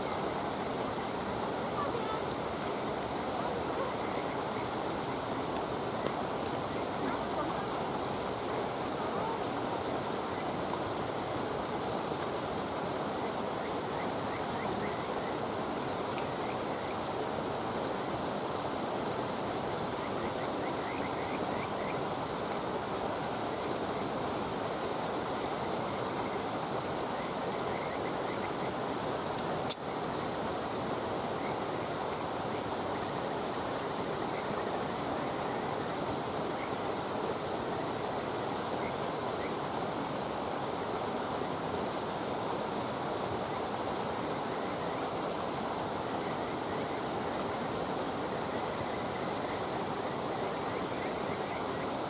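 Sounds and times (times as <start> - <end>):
faint fire crackles: 0.0 - 38.8
flowing water rushing: 0.0 - 52.0.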